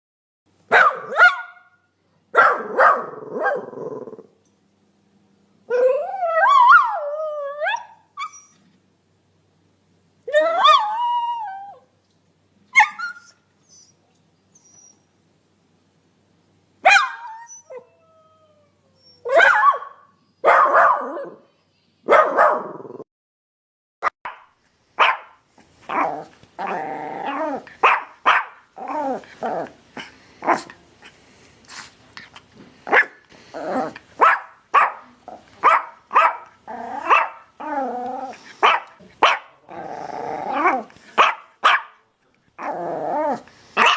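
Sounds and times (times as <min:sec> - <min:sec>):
dogs barking: 0:00.7 - 0:01.7, 0:02.4 - 0:03.7, 0:19.3 - 0:21.3, 0:22.1 - 0:22.7, 0:24.3 - 0:26.2, 0:27.3 - 0:28.7, 0:34.2 - 0:37.5, 0:38.6 - 0:39.6, 0:40.6 - 0:42.0.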